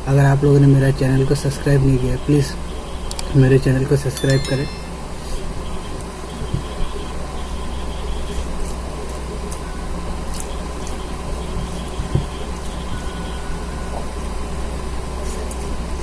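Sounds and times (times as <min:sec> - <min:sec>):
thin steady tone: 0:04.1 - 0:05.3.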